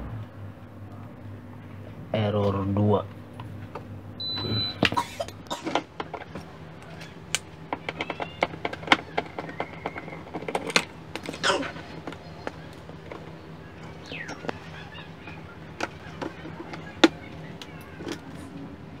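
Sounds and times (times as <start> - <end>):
rice cooker error beep: 4.2 - 4.9
clicks and knocks of handling: 5.6 - 13.4.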